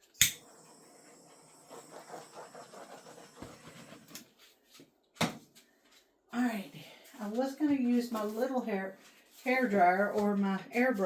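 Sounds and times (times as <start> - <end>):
dog panting: 0.6 - 4.3.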